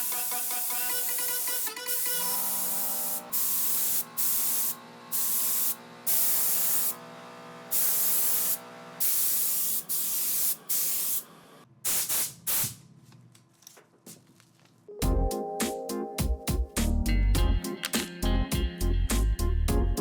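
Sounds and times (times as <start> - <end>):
spray paint hissing: 0.0 - 7.0, 7.7 - 12.8.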